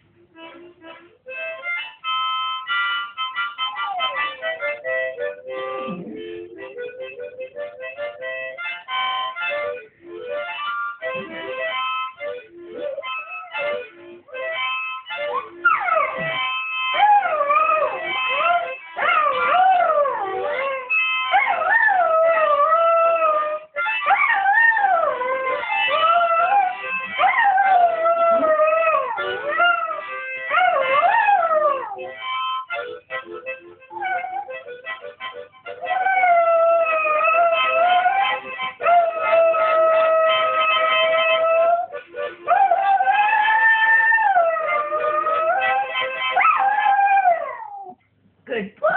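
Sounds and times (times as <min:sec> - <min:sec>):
harmonica playing: 0:00.0 - 0:47.9
dog howling: 0:03.8 - 0:04.4, 0:15.7 - 0:32.2, 0:34.0 - 0:34.7, 0:35.8 - 0:48.0.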